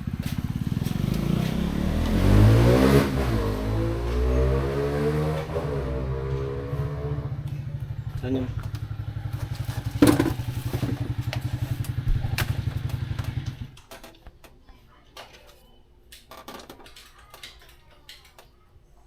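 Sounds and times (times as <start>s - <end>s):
small engine puttering: 8.1s - 13.8s.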